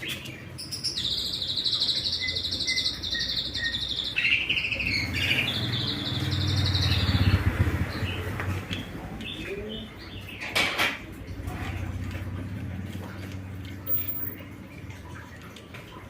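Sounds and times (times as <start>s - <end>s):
bird singing rapid trills: 0.0s - 8.3s
low rumbling noise: 4.6s - 10.2s.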